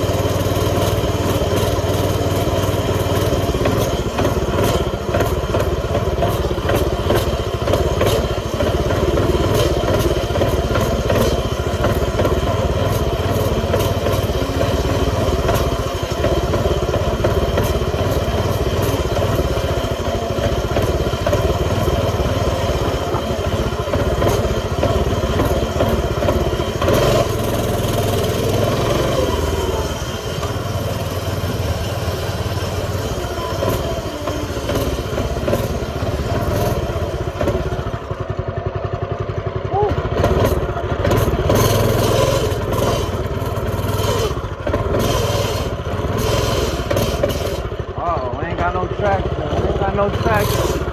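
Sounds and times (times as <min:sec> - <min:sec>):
small engine running with rattle: 0:00.0 - 0:50.9.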